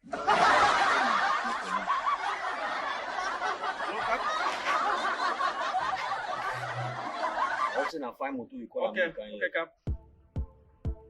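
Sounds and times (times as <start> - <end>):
crowd laughing: 0.0 - 8.1.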